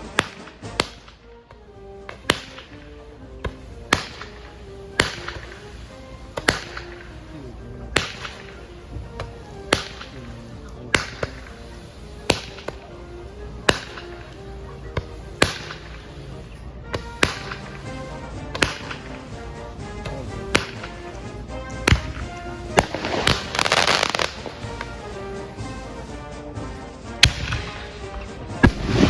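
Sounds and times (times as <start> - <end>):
sharp cracks: 0.0 - 26.2, 26.8 - 29.0
music with slow melody: 0.0 - 29.0.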